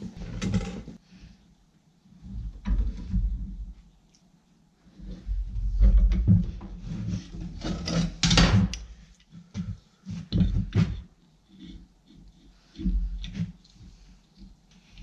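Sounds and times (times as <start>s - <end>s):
steel scraping and knocking: 5.2s - 8.9s.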